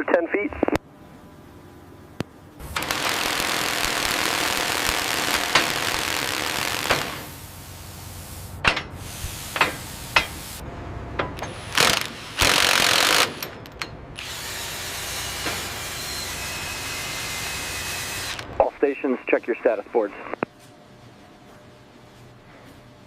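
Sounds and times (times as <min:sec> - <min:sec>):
steady mechanical din: 0:02.6 - 0:07.6, 0:08.6 - 0:18.7
loud hiss: 0:02.6 - 0:10.6, 0:11.5 - 0:13.5
metallic clicks and knocks: 0:13.3 - 0:14.0.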